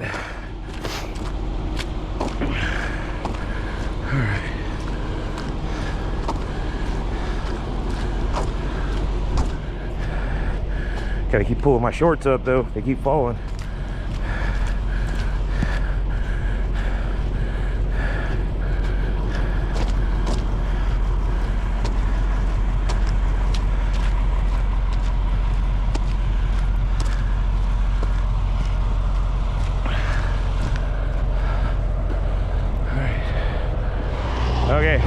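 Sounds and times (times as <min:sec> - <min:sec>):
footsteps in snow and slush: 0:00.0 - 0:11.8
loud steady low rumble: 0:00.0 - 0:35.0.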